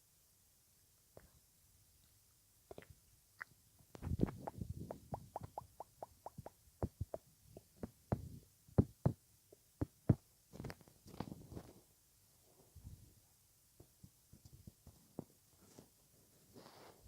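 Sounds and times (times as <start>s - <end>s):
wet mouth clicks and pops: 2.7s - 7.7s.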